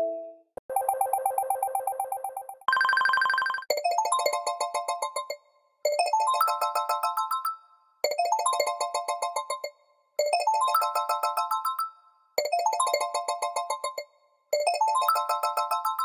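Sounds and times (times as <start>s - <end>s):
warbling phone ringtone trill: 2.7s - 4.3s.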